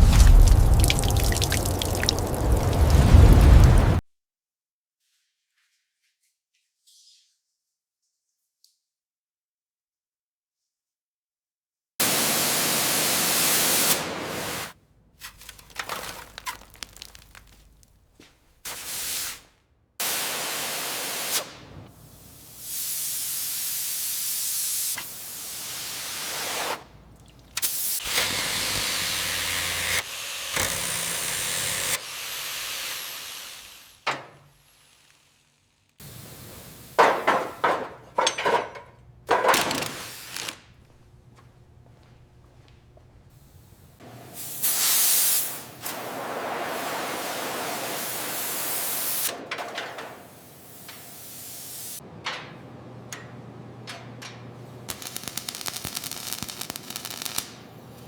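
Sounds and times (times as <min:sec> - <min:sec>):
steady hissing spray: 0:12.0 - 0:14.8, 0:18.6 - 0:27.0, 0:36.0 - 0:37.1, 0:43.3 - 0:49.3, 0:50.2 - 0:52.0.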